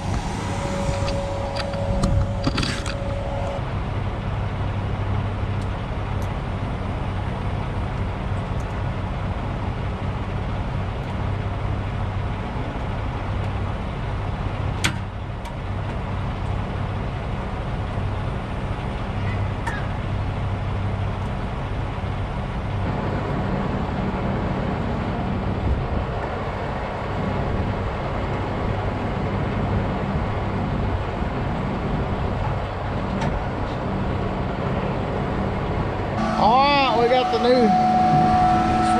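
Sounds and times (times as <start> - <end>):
thin whine: 0.0 - 3.8, 36.2 - 38.9
truck engine idling: 0.0 - 38.9.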